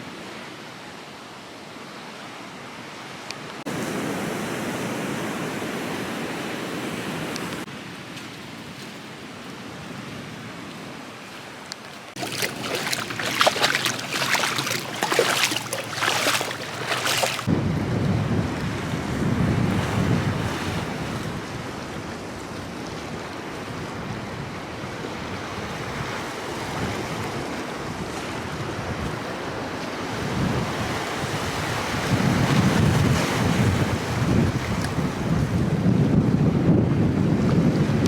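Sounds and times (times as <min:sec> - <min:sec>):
ocean surf: 0:00.0 - 0:35.7
wind buffeting microphone: 0:12.2 - 0:38.0.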